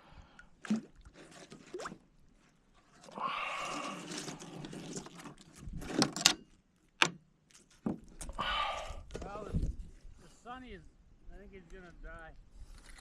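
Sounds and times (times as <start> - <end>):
rustling and scraping: 2.4 - 6.4.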